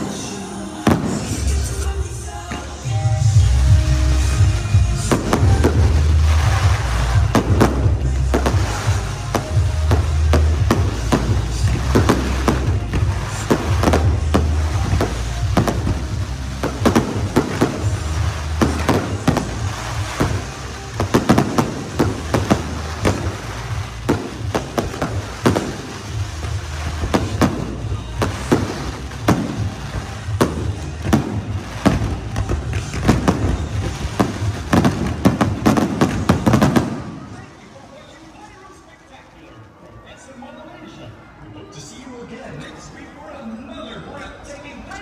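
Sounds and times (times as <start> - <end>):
firework shell bursts and bangs: 4.3 - 37.2.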